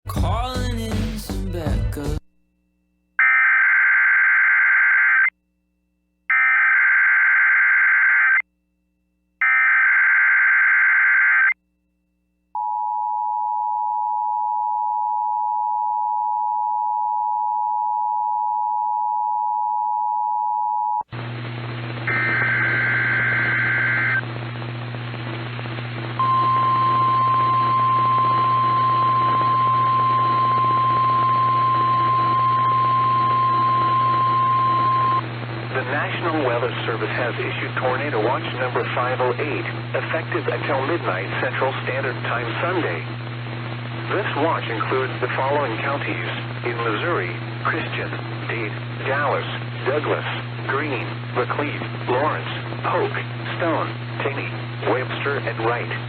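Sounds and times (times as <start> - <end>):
radio hiss: 21.2 - 29.4, 33.2 - 56.0.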